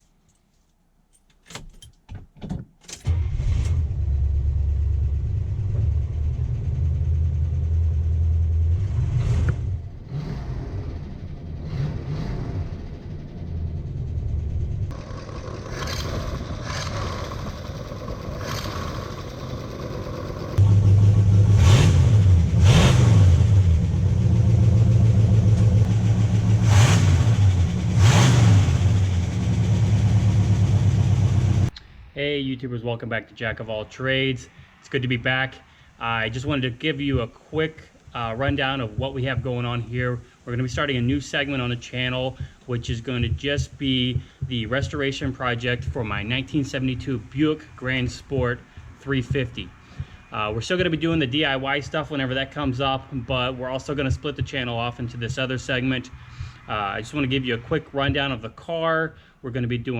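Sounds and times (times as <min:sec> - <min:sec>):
engine cranking: 0:01.1 - 0:02.1, 0:02.7 - 0:07.8, 0:09.0 - 0:31.7
car engine revving: 0:03.0 - 0:31.7.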